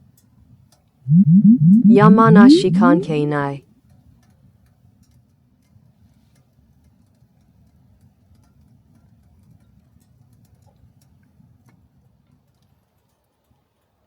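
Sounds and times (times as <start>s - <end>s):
low steady rumble: 1.1s - 3.6s.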